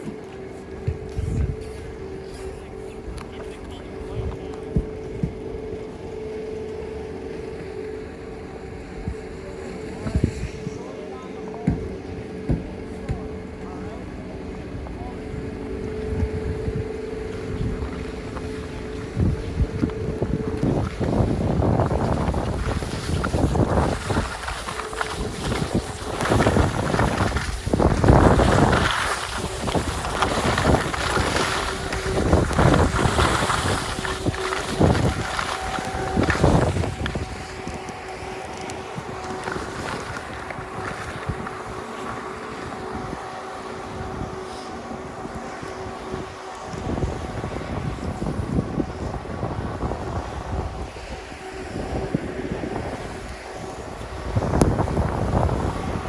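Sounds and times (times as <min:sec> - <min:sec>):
wind buffeting microphone: 0:00.0 - 0:56.0
skis hissing over snow: 0:17.4 - 0:56.0.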